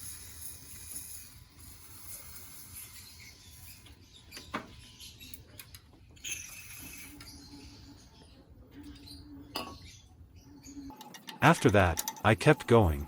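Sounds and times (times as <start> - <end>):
plastic parts clicking and squeaking: 0.2 - 7.5.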